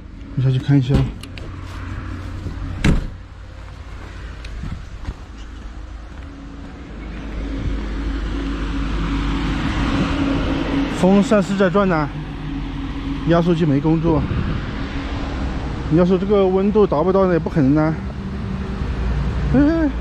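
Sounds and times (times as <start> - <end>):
steady low hum: 1.0 - 20.0.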